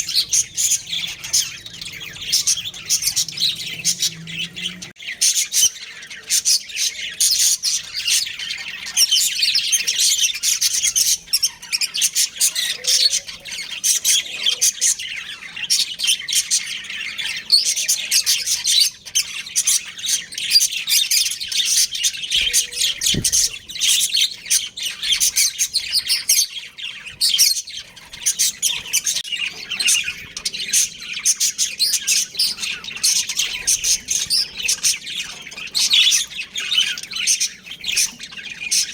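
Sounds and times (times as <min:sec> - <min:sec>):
budgerigars chirping: 0:00.0 - 0:38.9.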